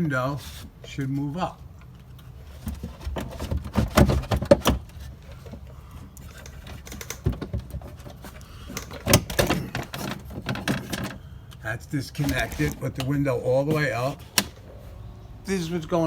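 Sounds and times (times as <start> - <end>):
clicks and rattles in car door: 2.6 - 5.7, 6.3 - 11.2.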